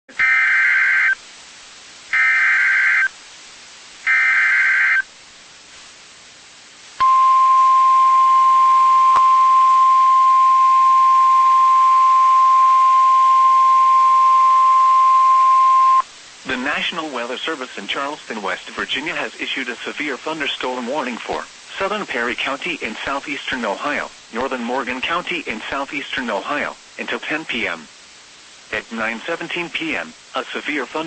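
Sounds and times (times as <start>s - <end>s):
steady warning alarm tone: 7.0s - 16.0s
data tone bursts: 7.0s - 16.7s.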